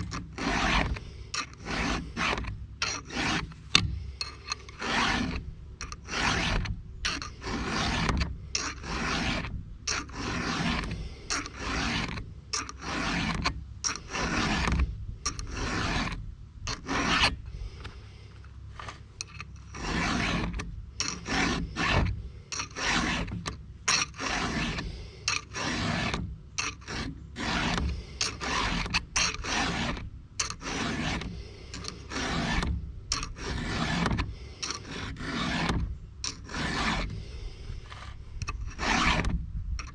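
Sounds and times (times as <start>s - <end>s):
file rasping on chain: 0.0s - 18.0s, 19.2s - 39.9s.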